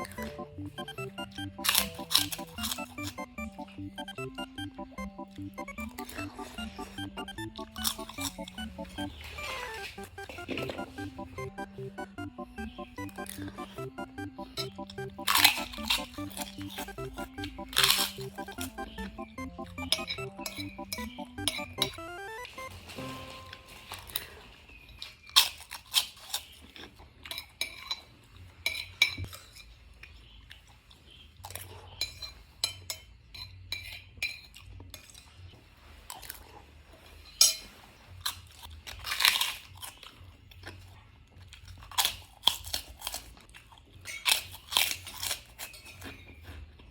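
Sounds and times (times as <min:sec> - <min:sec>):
crunchy chewing: 0:24.0 - 0:28.1, 0:38.1 - 0:46.9.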